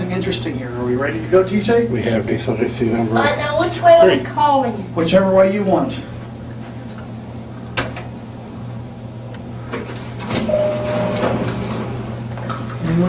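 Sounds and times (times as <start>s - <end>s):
elevator humming: 6.7s - 13.0s
elevator doors sliding: 9.7s - 12.2s
short steady tone: 10.5s - 11.4s.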